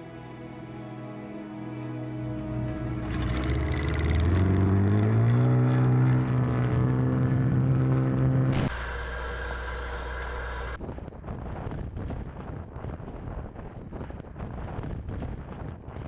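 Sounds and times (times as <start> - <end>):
engine revving: 1.9 - 10.8
hiss: 8.6 - 10.8.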